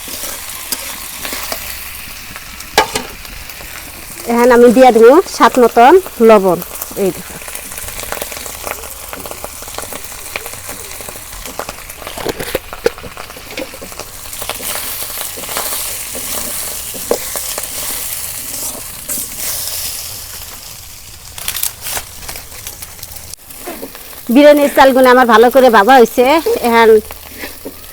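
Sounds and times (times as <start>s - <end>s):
spoon scraping a pan: 0.0s - 1.8s, 11.5s - 20.0s
rice sizzling in oil: 0.0s - 27.9s.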